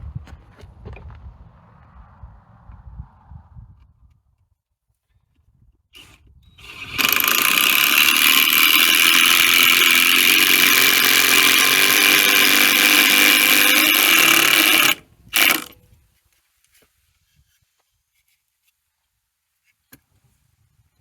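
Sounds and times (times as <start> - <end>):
power tool running under load: 6.0 - 15.8.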